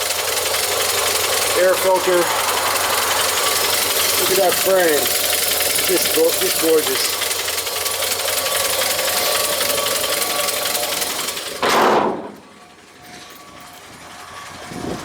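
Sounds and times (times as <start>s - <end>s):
engine idling: 0.0s - 15.0s
brief rush of noise: 2.2s - 4.2s.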